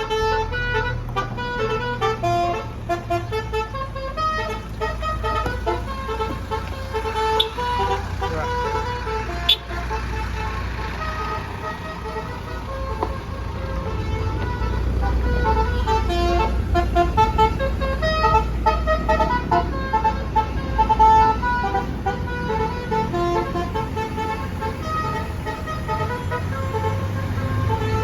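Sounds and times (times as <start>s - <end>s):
bus engine rumble: 0.0s - 28.0s
bus musical horn playing a tune: 0.0s - 28.0s.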